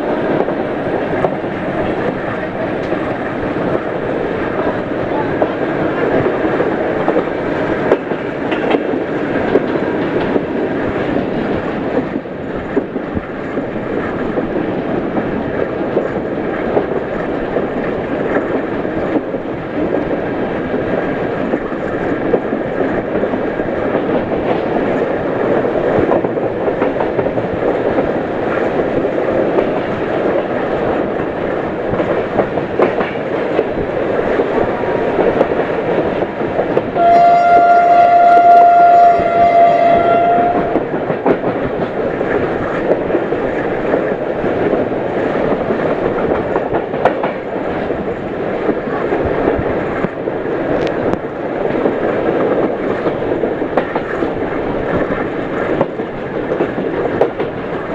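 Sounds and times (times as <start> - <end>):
wheels clattering over rail joints: 0.0 - 20.2
train coaches rumbling past: 0.0 - 57.9.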